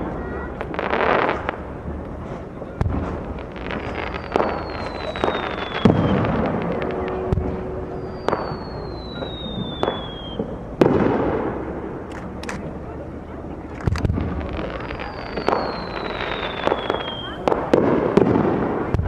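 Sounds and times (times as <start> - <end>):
fireworks booming: 0.0 - 19.0
falling firework whistles: 2.2 - 10.6, 14.6 - 17.4.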